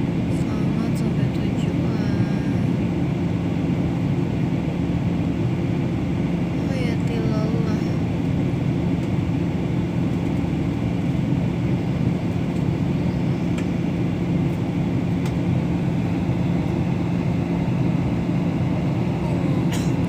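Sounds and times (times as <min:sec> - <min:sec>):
airliner cabin engine roar: 0:00.0 - 0:20.0
constant low hum: 0:00.0 - 0:20.0.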